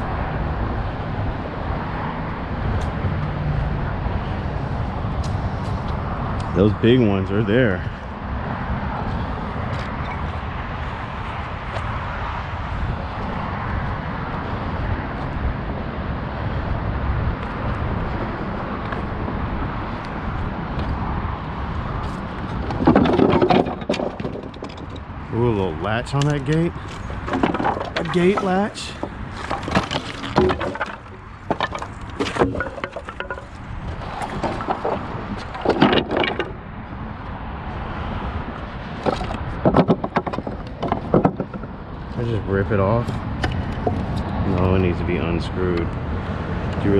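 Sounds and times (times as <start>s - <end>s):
urban background rumble: 0.0s - 46.9s
wooden boards knocking: 22.6s - 25.0s, 26.2s - 36.6s, 39.0s - 41.7s.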